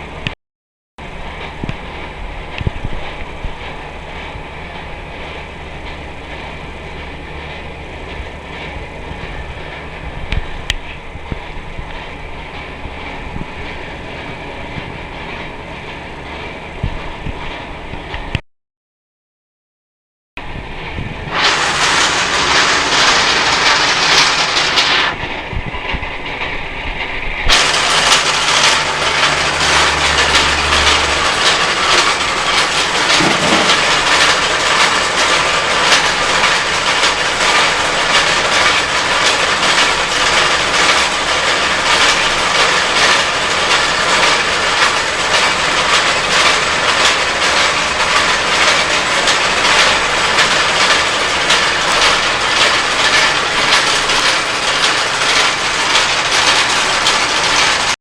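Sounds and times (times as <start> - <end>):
sand tumbling in rotating drum: 21.2 - 25.9, 27.4 - 58.0.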